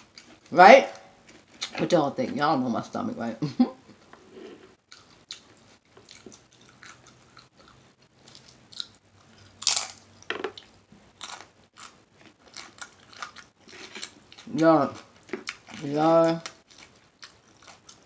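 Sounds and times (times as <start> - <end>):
chewing and mouth smacking: 4.9 - 18.0.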